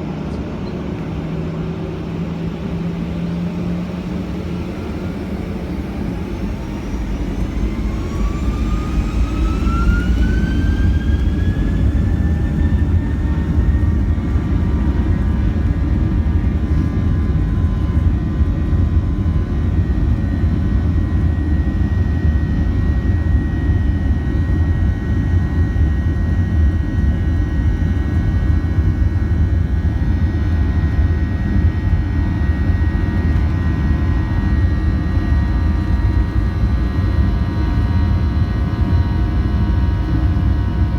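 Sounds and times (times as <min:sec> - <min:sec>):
jet engines spooling up: 0:00.0 - 0:29.2.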